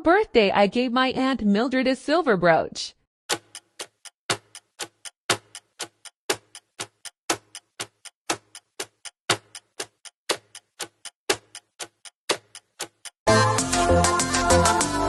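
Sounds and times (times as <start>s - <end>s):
clock ticking: 3.3s - 13.2s.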